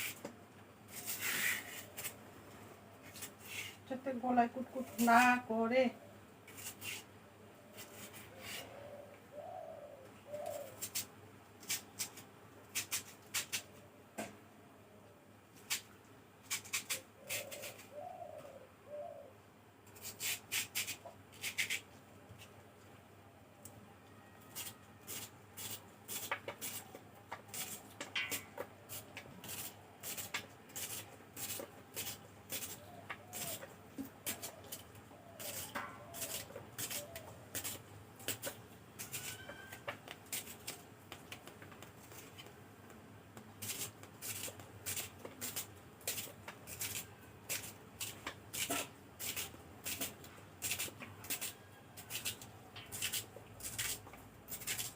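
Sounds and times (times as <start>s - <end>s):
dove cooing: 8.3s - 10.8s, 17.2s - 19.4s, 32.8s - 37.5s.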